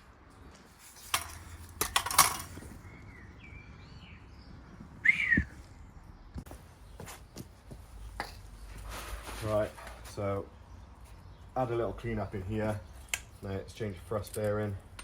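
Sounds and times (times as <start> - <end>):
metal tools clanking: 1.0 - 2.7
birds chirping: 2.5 - 8.8, 10.1 - 14.6.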